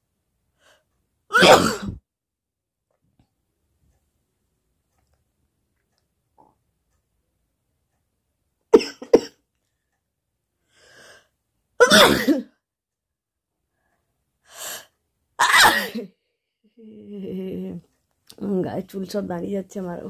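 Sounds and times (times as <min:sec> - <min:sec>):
woman sneezing: 0:01.3 - 0:02.0, 0:15.4 - 0:16.1
faint breath: 0:10.6 - 0:11.4.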